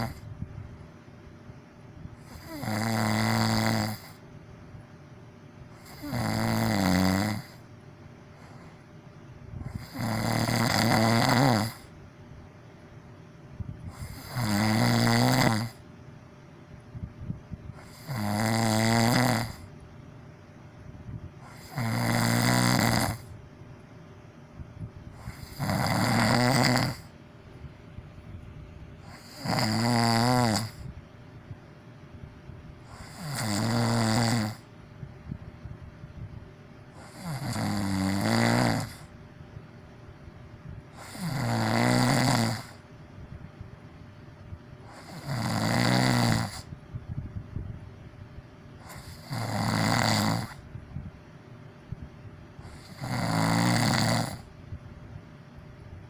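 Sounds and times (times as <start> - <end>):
person snoring loudly: 0.0 - 0.2, 2.2 - 4.2, 5.8 - 7.6, 9.6 - 11.9, 13.9 - 15.8, 17.8 - 19.7, 21.4 - 23.3, 25.1 - 27.1, 29.0 - 30.9, 32.9 - 34.7, 37.0 - 39.2, 41.0 - 42.8, 44.9 - 46.7, 48.8 - 50.6, 52.6 - 54.5
quiet breath noise: 5.6 - 16.0.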